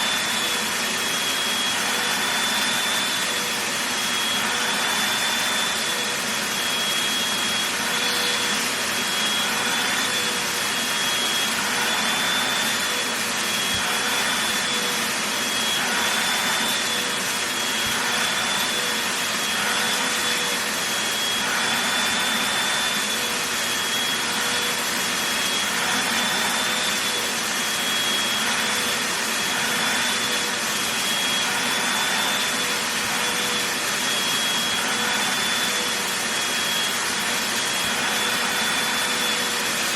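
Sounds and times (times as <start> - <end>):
vacuum cleaner running: 0.0 - 39.9.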